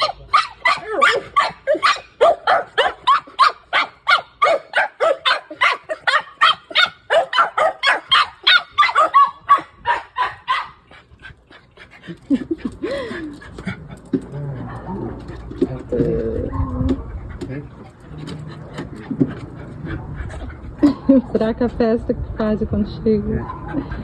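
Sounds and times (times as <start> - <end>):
dogs barking and yelping: 0.0 - 15.6, 23.4 - 24.0.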